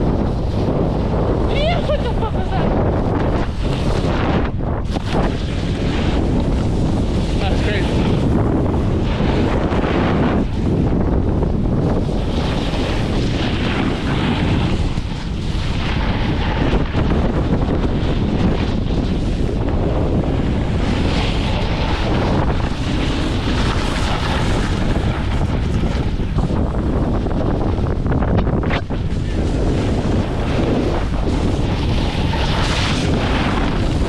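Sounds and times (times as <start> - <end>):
wind rushing over microphone: 0.0 - 34.0.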